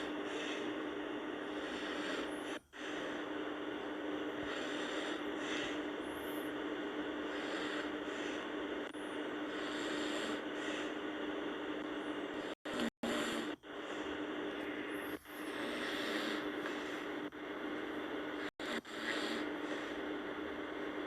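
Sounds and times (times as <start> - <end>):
steady low hum: 0.0 - 21.0
person snoring: 1.4 - 3.2, 4.3 - 6.6, 9.5 - 11.0, 12.3 - 17.1, 18.3 - 20.1.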